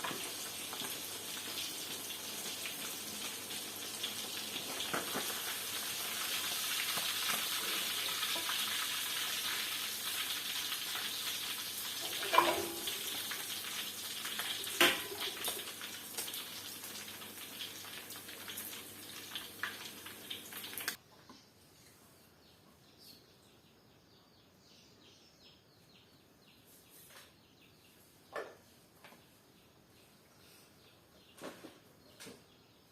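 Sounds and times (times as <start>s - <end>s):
food sizzling in hot oil: 0.0s - 21.0s
utensil clanking against pan: 12.0s - 13.0s.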